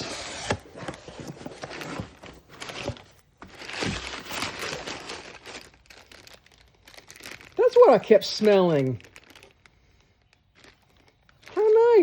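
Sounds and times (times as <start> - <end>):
paper and packaging rustling: 0.0 - 12.0.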